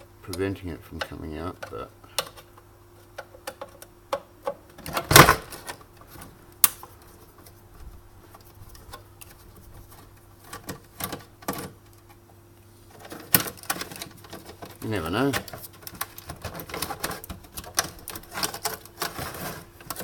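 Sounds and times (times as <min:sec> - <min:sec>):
plastic and metal parts clicking: 0:12.9 - 0:20.0.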